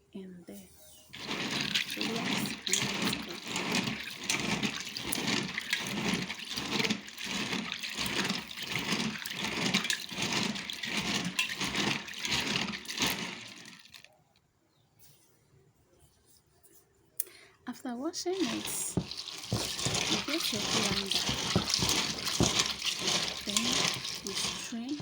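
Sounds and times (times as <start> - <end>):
water sloshing in a bowl: 1.1 - 14.1, 18.3 - 25.0.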